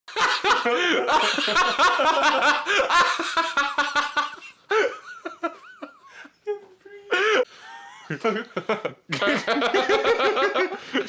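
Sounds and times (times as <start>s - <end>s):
people laughing: 0.1s - 6.2s, 7.1s - 11.0s.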